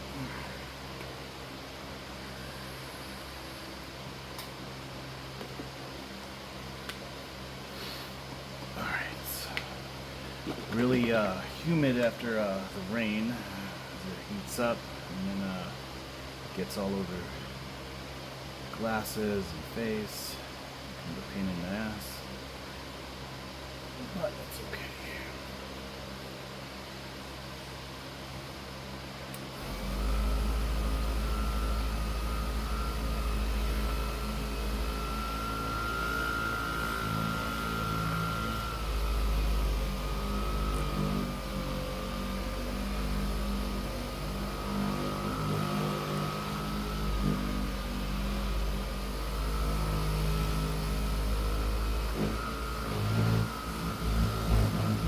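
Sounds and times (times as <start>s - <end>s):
power tool motor whining: 29.5s - 55.0s.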